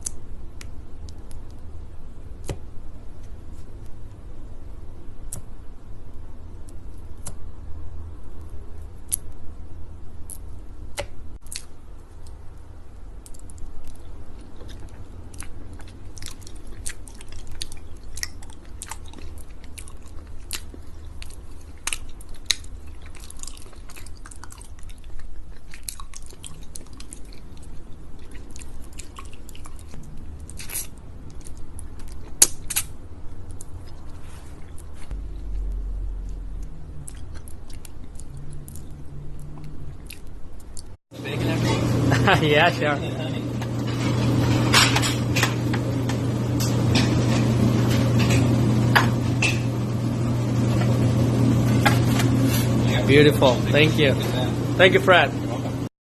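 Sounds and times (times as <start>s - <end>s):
close-miked wet chewing: 13.2s - 41.0s
low hum: 32.9s - 55.9s.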